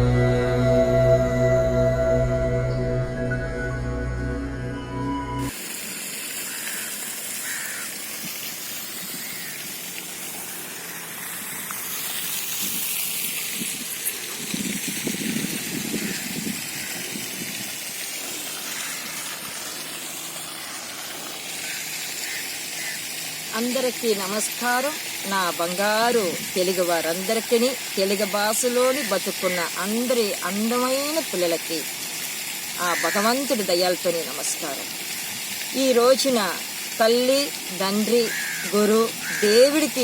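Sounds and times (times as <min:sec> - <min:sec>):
ambient music: 0:00.0 - 0:05.6.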